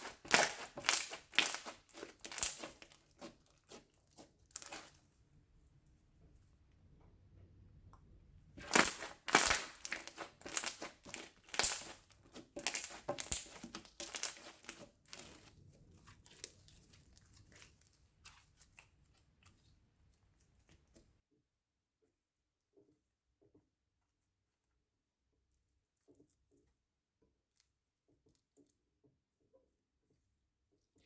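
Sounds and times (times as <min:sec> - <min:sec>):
slime squishing and popping: 0:00.0 - 0:05.0, 0:08.6 - 0:19.4.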